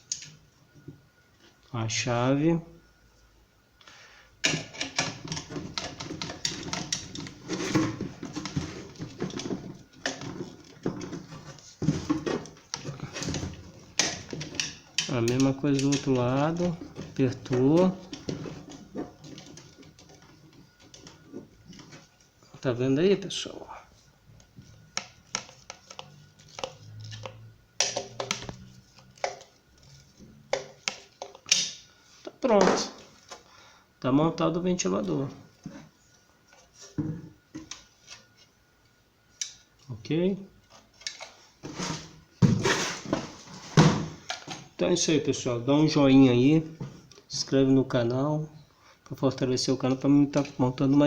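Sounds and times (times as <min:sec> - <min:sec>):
handling clicks and knocks: 0:04.4 - 0:22.3.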